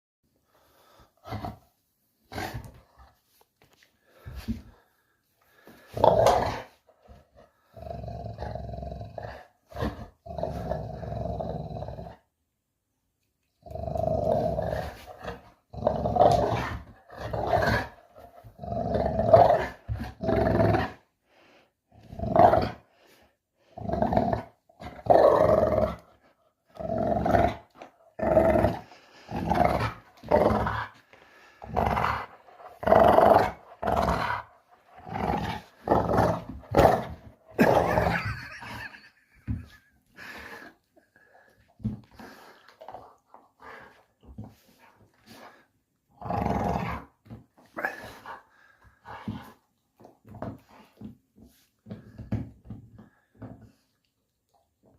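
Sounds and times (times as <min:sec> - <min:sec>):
puppy growling: 0:26.8 - 0:40.7.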